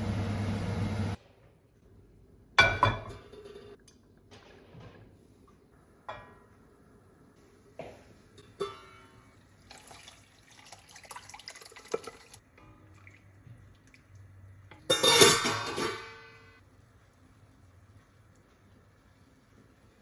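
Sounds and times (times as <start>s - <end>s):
liquid sounds: 9.3s - 14.8s
dishes clattering: 14.7s - 16.5s
utensils clinking against dishes: 14.9s - 16.5s.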